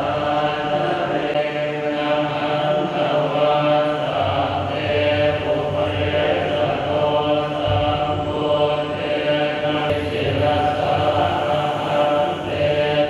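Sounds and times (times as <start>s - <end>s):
monks chanting in unison: 0.0s - 13.0s.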